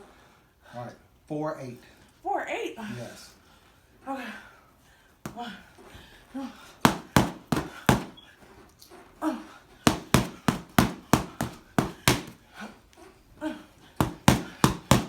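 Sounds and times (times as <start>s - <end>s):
punches smacking boxing pads: 5.3s - 5.7s, 6.8s - 8.2s, 9.8s - 12.5s, 14.0s - 15.0s.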